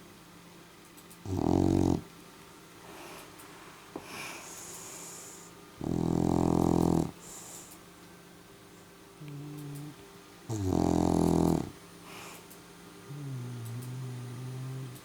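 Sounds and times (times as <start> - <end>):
dog snoring: 1.2 - 2.1, 4.0 - 7.8, 9.2 - 12.4, 13.0 - 15.0
quiet breathing: 2.8 - 7.9, 8.8 - 15.0.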